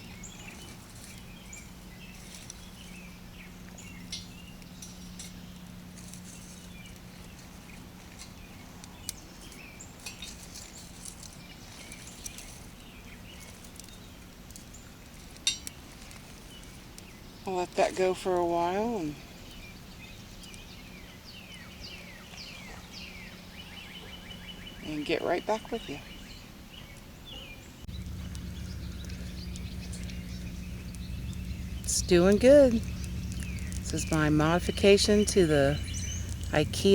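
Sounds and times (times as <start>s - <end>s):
faint bird chirps: 26.0s - 36.9s
low hum: 27.8s - 36.9s
wood fire crackling: 27.8s - 36.9s
light ticks: 27.9s - 36.9s.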